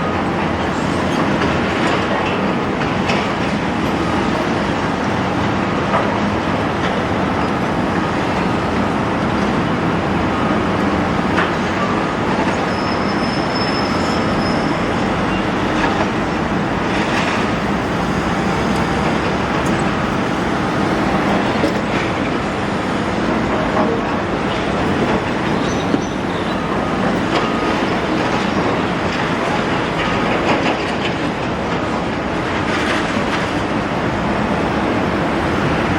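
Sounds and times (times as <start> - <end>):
high metallic squeal: 12.7 - 15.4
excavator engine running: 14.7 - 35.9.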